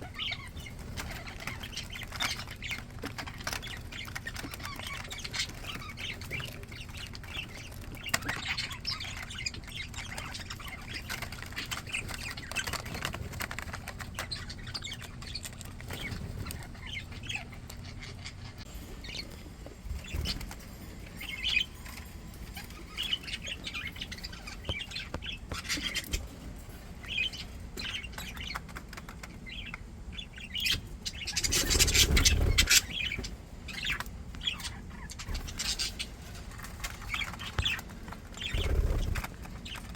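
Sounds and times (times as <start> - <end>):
budgerigars chattering and chirping: 0.0 - 26.4, 27.0 - 39.9
wings flapping: 31.4 - 33.1, 36.6 - 39.5.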